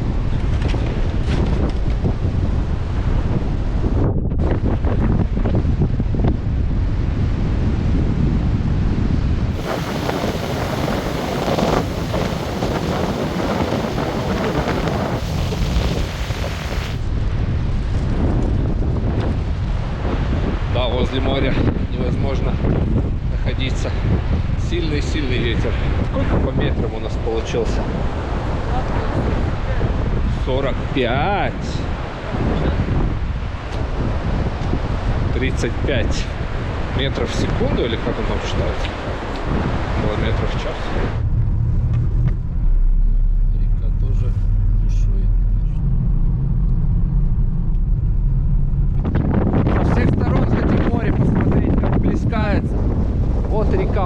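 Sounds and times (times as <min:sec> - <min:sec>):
storm waves breaking on shore: 0:00.0 - 0:43.5, 0:47.6 - 0:54.0
wind buffeting microphone: 0:00.0 - 0:54.0
waves breaking on shore: 0:09.4 - 0:17.1, 0:27.7 - 0:41.2.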